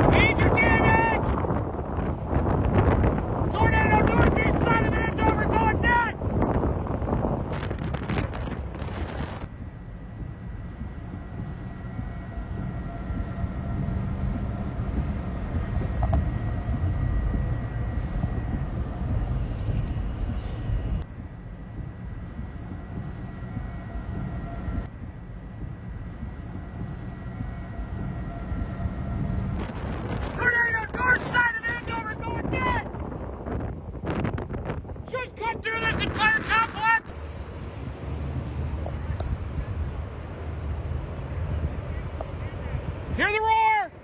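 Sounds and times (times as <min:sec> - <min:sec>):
tornado roar: 0:00.0 - 0:44.0
faint high whine: 0:02.3 - 0:44.0.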